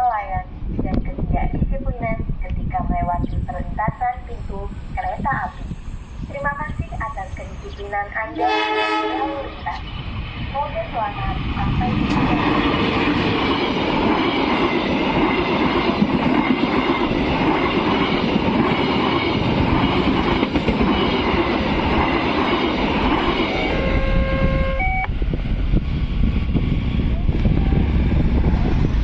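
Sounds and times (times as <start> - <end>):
train wheels clattering over rails: 12.0 - 23.6
short steady tone: 23.8 - 25.2.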